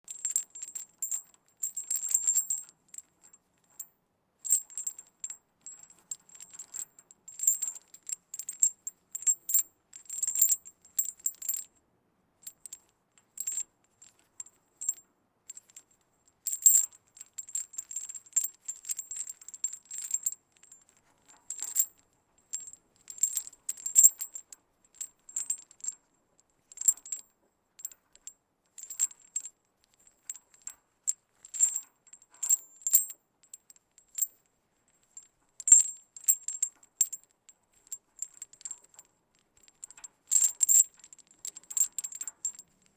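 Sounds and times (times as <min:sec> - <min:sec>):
metal chain clinking: 0:21.5 - 0:24.4, 0:26.8 - 0:28.0, 0:37.8 - 0:42.6.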